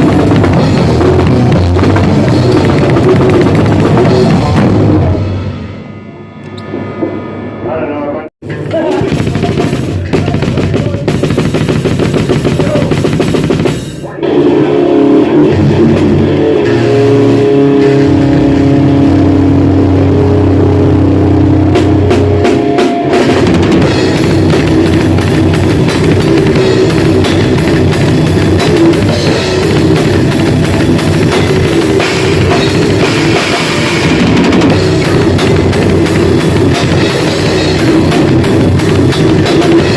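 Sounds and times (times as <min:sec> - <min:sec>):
drum kit and cymbals: 0:00.0 - 0:07.5, 0:08.4 - 0:39.9
loud band playing grindcore: 0:00.0 - 0:07.6, 0:08.4 - 0:39.9
sustained low chords: 0:00.0 - 0:07.8, 0:14.2 - 0:39.9.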